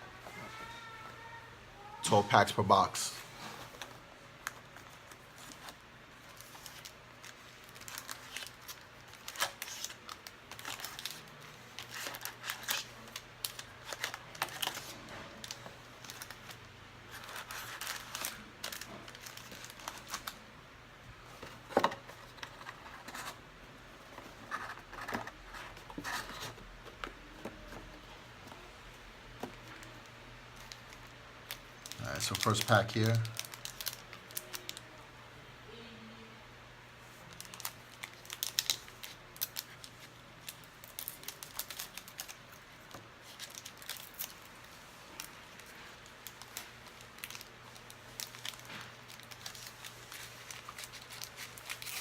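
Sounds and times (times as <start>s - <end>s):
packaging crinkling and rustling: 3.3s - 20.4s, 21.3s - 23.4s, 24.0s - 28.7s, 29.3s - 34.9s, 37.2s - 52.0s
packaging tearing: 5.1s - 20.4s, 31.5s - 34.8s, 37.4s - 42.4s, 43.2s - 44.5s, 45.6s - 52.0s.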